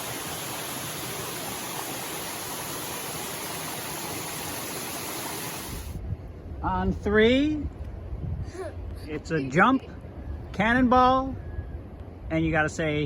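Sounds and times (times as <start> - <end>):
waterfall rushing: 0.0 - 5.9.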